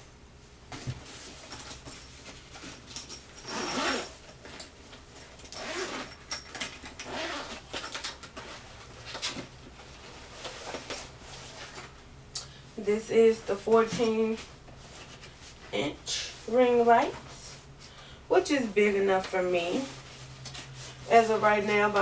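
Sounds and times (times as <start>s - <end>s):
rustling and handling noises: 0.7s - 12.2s, 13.1s - 22.0s.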